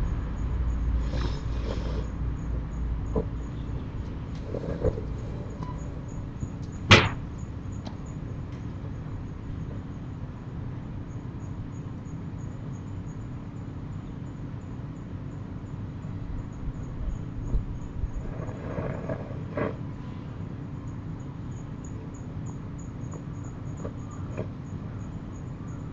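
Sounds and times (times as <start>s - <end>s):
sharp wooden clack: 6.9s - 7.3s.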